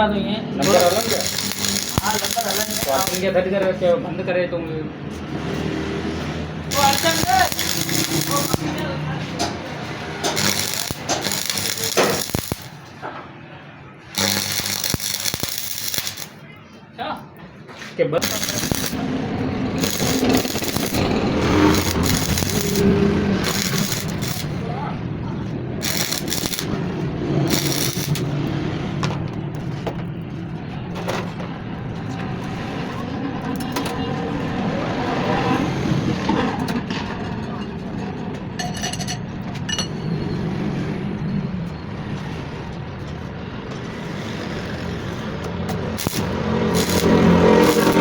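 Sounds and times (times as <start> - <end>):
loud buzzing hiss: 0.6 - 3.3, 6.7 - 8.7, 10.3 - 12.8, 14.2 - 16.4, 18.2 - 19.1, 19.8 - 24.6, 25.8 - 26.8, 27.5 - 28.3, 46.0 - 48.0
machinery humming: 0.6 - 3.4, 6.4 - 12.9, 13.9 - 16.6, 18.2 - 28.6, 45.1 - 48.0
metal parts clinking: 6.7 - 8.7, 10.2 - 12.8, 19.8 - 24.5.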